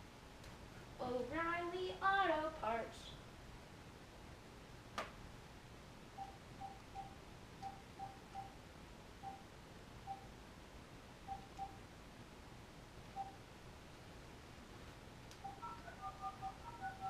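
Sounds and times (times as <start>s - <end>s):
phone keypad beeps: 6.2s - 8.5s, 11.3s - 11.8s, 13.2s - 13.4s, 15.4s - 17.0s.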